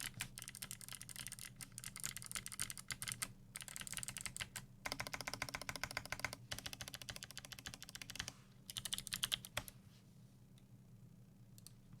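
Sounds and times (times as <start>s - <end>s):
fast typing on clicky keyboard: 0.0s - 9.7s.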